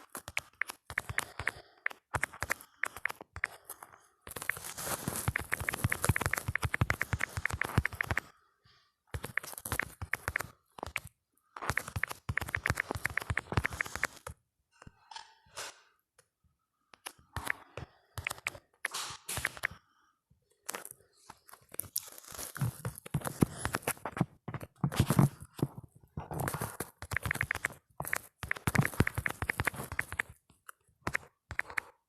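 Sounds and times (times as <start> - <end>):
phone keyboard clicks: 0.2 - 3.6, 5.3 - 8.3, 9.2 - 14.3, 17.0 - 19.8, 27.0 - 30.4, 31.0 - 31.9.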